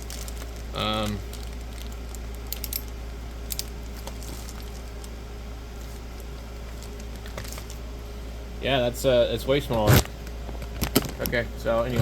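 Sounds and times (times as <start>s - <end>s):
packaging rustling: 0.0s - 2.8s, 3.6s - 5.2s, 5.8s - 7.8s.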